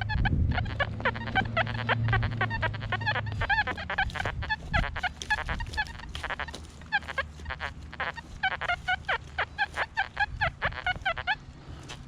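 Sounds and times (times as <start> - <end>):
geese honking: 0.0 - 11.9.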